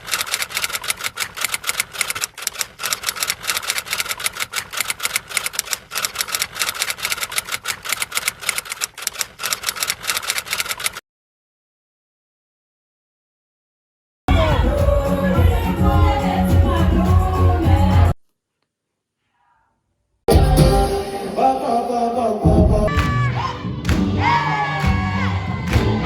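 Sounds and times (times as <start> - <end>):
rapid even clicking: 0.0 - 11.0.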